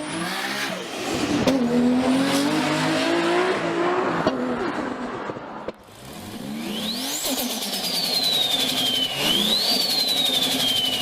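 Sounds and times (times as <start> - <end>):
turbocharged car engine revving: 0.0 - 11.0
turbo whistle: 6.6 - 11.0.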